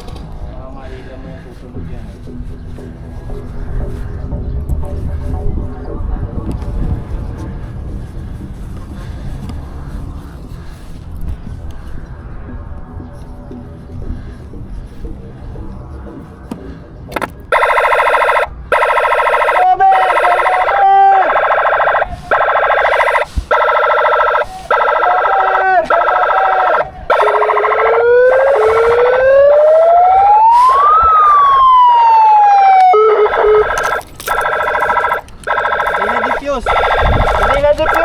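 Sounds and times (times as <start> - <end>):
buzzing electronic alarm: 17.1 - 38.0
siren sweep: 17.1 - 38.0.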